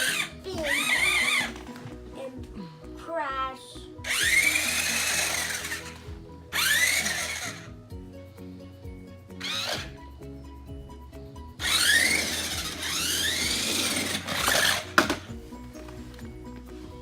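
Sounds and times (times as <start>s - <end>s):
toy car motor whirring: 0.0s - 1.7s, 4.0s - 7.8s, 9.4s - 10.0s, 11.6s - 15.3s.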